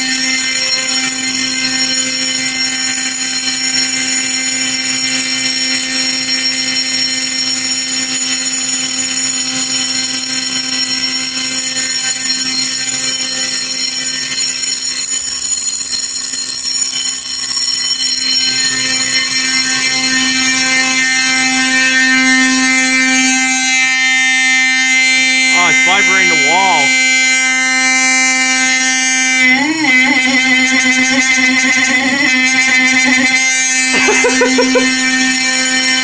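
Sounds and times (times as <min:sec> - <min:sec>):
fire alarm horn harsh tone: 0:00.0 - 0:36.0.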